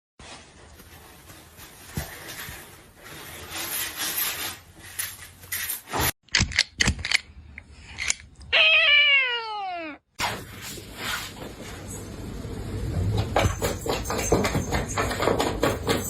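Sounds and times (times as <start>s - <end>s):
cat meowing: 8.5s - 10.0s.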